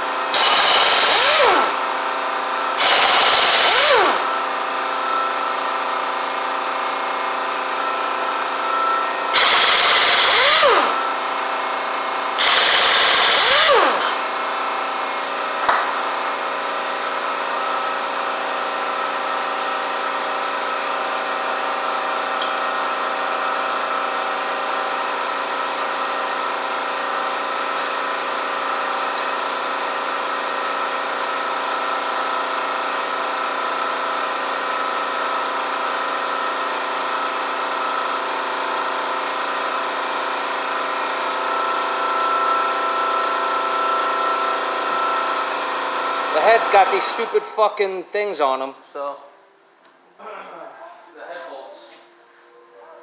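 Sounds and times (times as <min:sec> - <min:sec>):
impact wrench bursts: 0:00.2 - 0:04.6, 0:09.3 - 0:14.6, 0:45.4 - 0:47.6.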